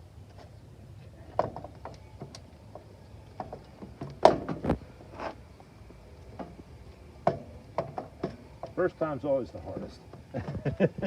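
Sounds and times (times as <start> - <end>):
bike rack metal clicks and knocks: 7.2 - 8.8.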